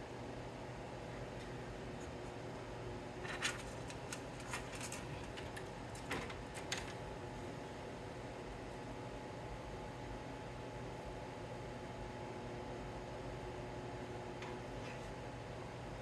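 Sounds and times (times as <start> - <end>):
hardware clicking and rattling: 3.2 - 7.0.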